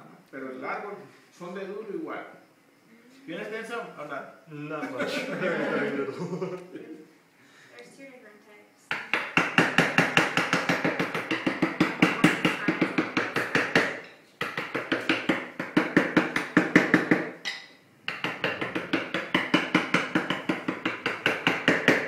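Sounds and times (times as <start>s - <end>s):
rapid tapping on wood: 8.9s - 17.4s, 18.1s - 22.0s.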